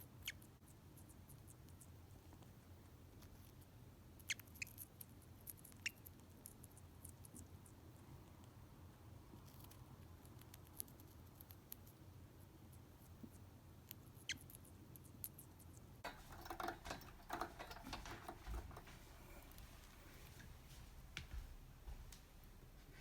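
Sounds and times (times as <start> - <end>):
parrot clicks and scratching: 13.9 - 19.6
rustling: 16.0 - 21.5.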